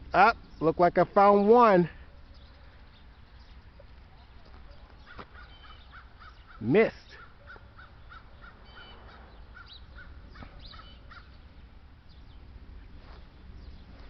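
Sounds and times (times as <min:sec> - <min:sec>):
high bird chirps: 0:02.0 - 0:12.5
crows cawing: 0:05.0 - 0:11.4.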